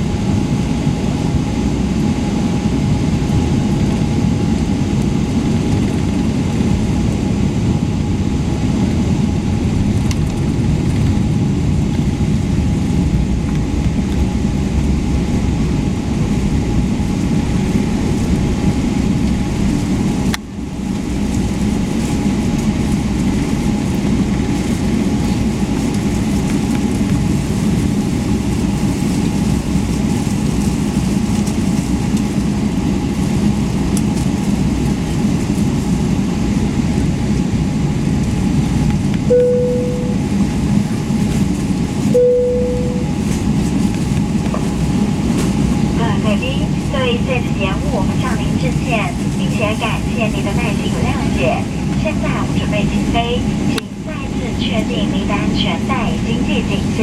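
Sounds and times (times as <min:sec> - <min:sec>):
aircraft cabin engine rumble: 0:00.0 - 0:57.0
faint steady hum: 0:39.2 - 0:41.1, 0:42.0 - 0:43.5, 0:45.9 - 0:57.0.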